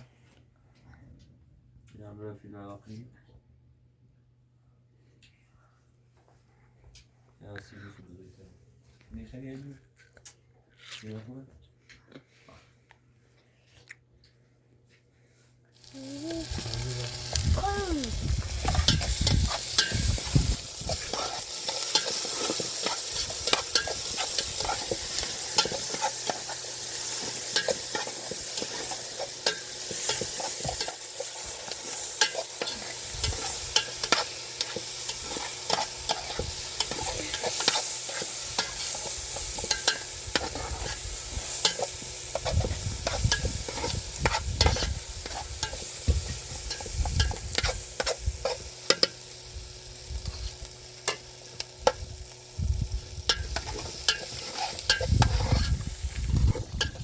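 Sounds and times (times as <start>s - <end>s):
food sizzling in a pan: 15.8s - 57.0s.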